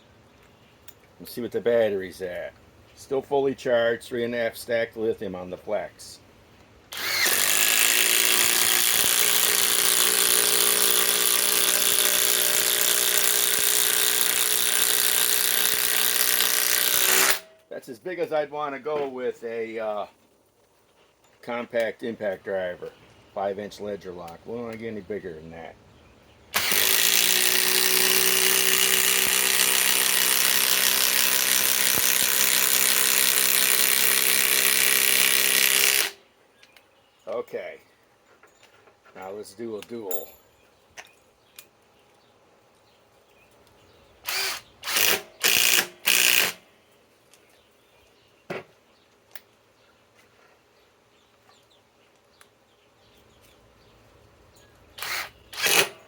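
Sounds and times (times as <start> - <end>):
impact driver hammering screw into wood: 6.9 - 17.5, 26.5 - 36.2, 44.3 - 46.6, 55.0 - 56.0.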